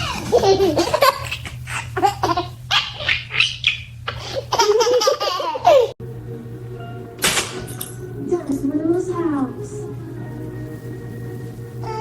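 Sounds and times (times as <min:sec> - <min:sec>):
baby laughing: 0:00.0 - 0:06.0.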